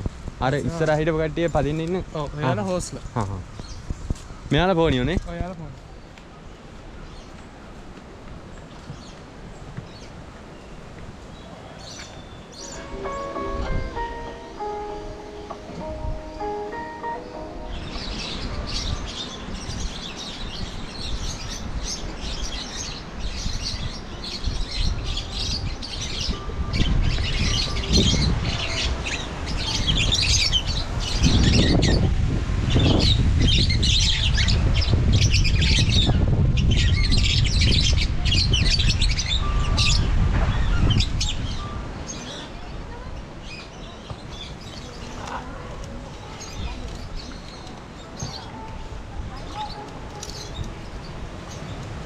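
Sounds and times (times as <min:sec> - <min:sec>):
birds chirping and squawking: 0:43.4 - 0:48.6, 0:49.3 - 0:51.8.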